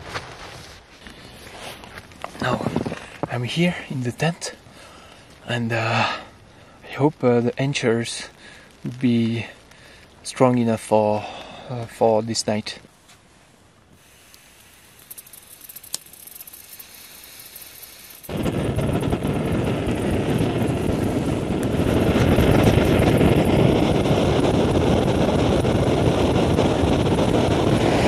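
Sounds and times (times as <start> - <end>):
gas stove burning roar: 14.2 - 28.0.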